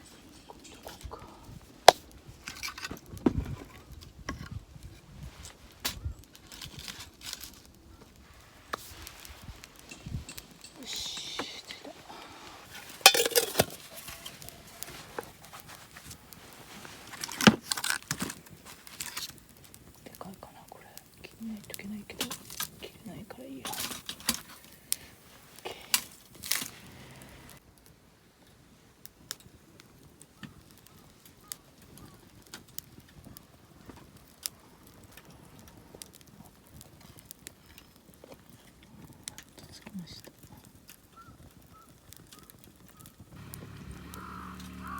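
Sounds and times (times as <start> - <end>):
wood fire crackling: 0.0 - 44.9
cookware clinking and knocking: 13.1 - 13.8.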